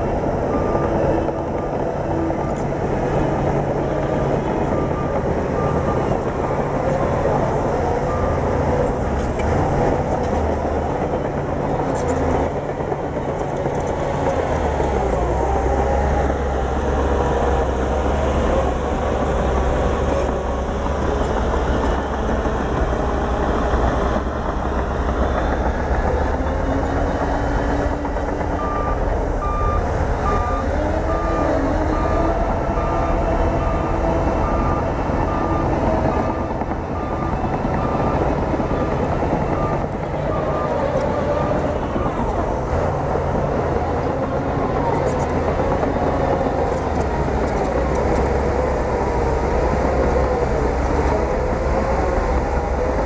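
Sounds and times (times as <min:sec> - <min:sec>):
bulldozer diesel engine: 0:00.0 - 0:53.0
reversing alarm beeping: 0:00.4 - 0:08.8, 0:28.5 - 0:42.4.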